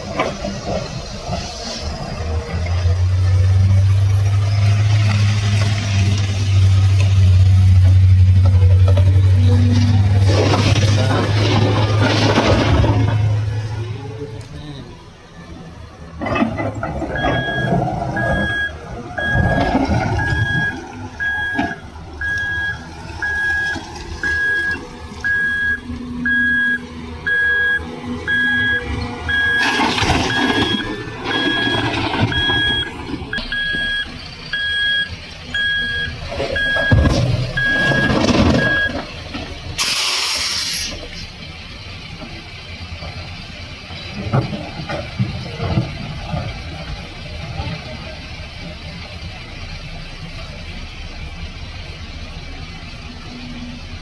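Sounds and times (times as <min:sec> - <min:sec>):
diesel engine rumble: 0:00.0 - 0:54.0
reversing alarm beeping: 0:16.2 - 0:39.2
short hiss: 0:39.8 - 0:41.2.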